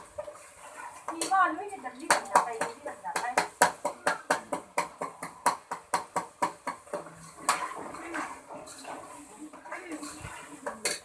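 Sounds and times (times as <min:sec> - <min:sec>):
spoon scraping against pot: 0:00.0 - 0:01.4, 0:06.5 - 0:11.0.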